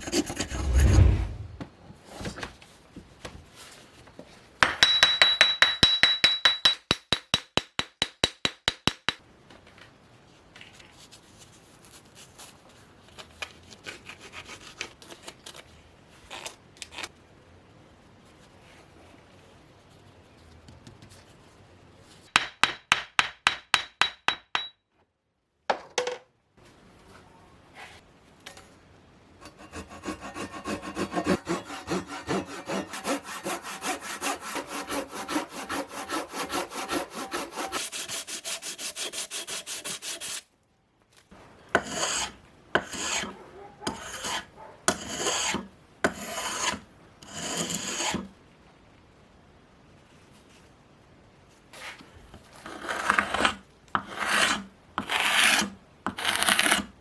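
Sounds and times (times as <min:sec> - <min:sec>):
hand tool scraping wood: 0:00.0 - 0:01.0, 0:29.4 - 0:40.4, 0:41.8 - 0:48.3, 0:52.6 - 0:56.9.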